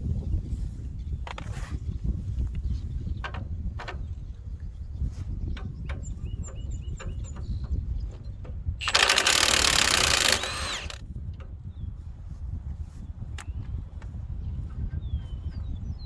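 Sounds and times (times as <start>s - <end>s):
impact wrench hammering: 8.8s - 11.0s
tools clicking: 8.8s - 11.0s.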